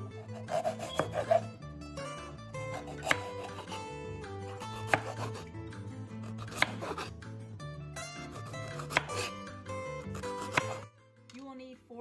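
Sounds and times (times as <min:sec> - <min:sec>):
knife slicing peppers: 0:00.0 - 0:01.6, 0:02.6 - 0:05.5, 0:06.1 - 0:07.1, 0:08.2 - 0:09.4, 0:10.0 - 0:10.9
background music: 0:00.0 - 0:12.0
knife knocking on cutting board: 0:02.9 - 0:03.3, 0:06.4 - 0:07.0, 0:10.5 - 0:10.8.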